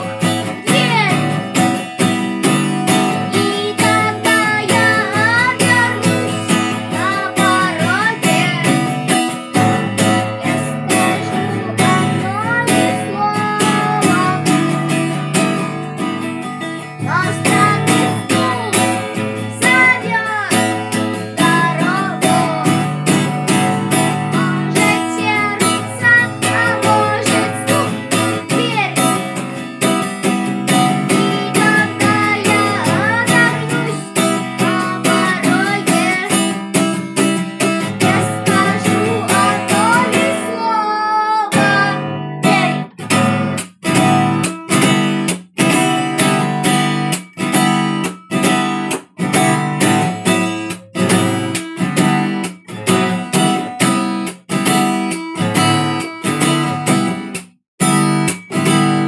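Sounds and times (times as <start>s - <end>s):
acoustic guitar strumming: 0.0s - 59.0s
man singing: 24.7s - 29.0s, 38.0s - 42.7s.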